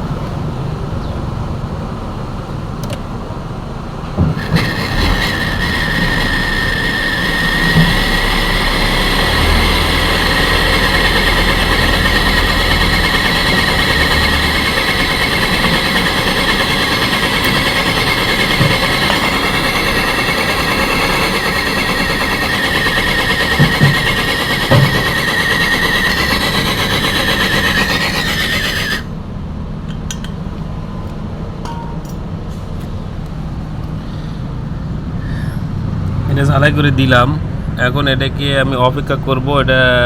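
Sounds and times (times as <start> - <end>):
torch flame hissing: 4.3 - 29.1.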